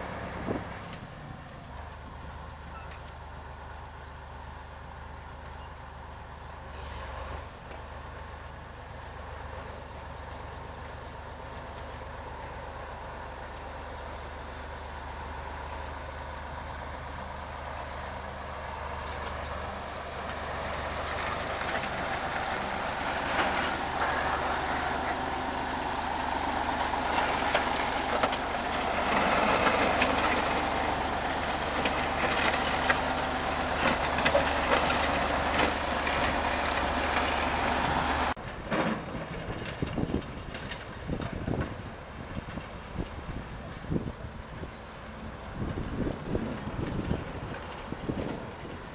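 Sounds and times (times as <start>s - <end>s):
diesel engine under load: 0.0s - 48.9s
machine clattering and scraping: 19.0s - 41.7s.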